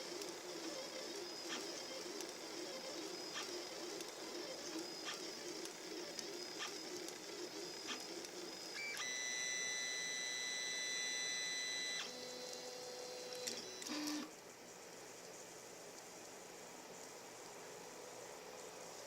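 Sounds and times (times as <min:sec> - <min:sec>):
stepper motors whining: 0:00.2 - 0:14.3.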